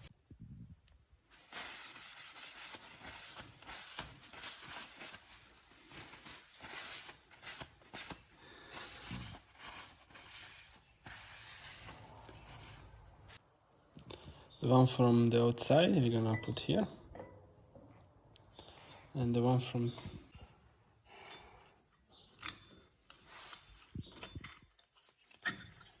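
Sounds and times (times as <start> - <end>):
hands rubbing and scraping parts: 1.4 - 13.4, 21.6 - 26.0.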